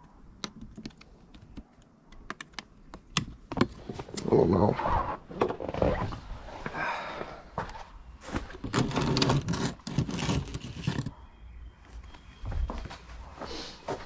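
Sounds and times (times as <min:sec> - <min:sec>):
objects clicking and scraping: 0:08.5 - 0:11.1.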